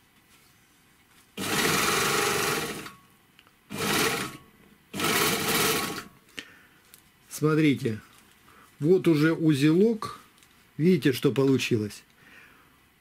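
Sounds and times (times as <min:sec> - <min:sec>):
overlocker sewing machine running: 0:01.4 - 0:03.0, 0:03.7 - 0:06.1.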